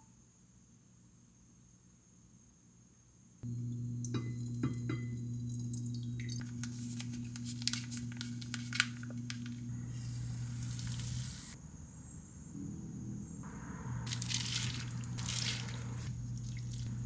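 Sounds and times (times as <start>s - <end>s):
steady low hum: 3.4s - 17.0s
cooking crackles and clicks: 3.6s - 11.6s, 14.0s - 17.0s.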